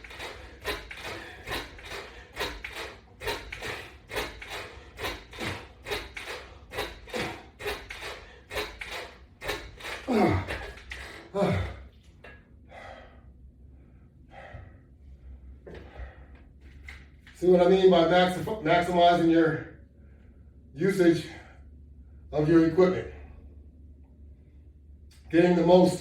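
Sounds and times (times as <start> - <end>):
man breathing hard: 0.2 - 16.5
man groaning: 10.0 - 11.9.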